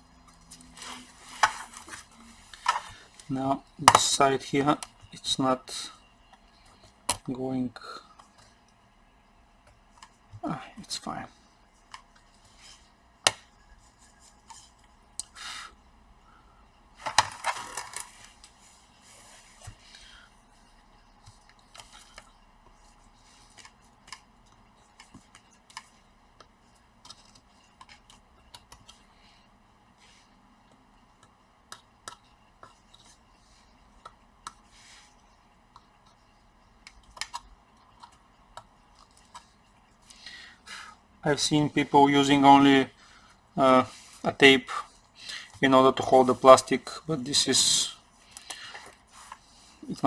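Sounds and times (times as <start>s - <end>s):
scrape or rustle: 0.6s - 2.9s.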